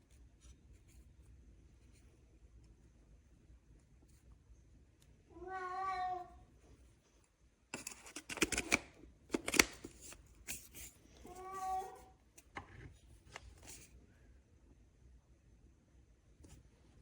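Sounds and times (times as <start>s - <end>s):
cat meowing: 5.3s - 6.4s, 11.3s - 12.1s.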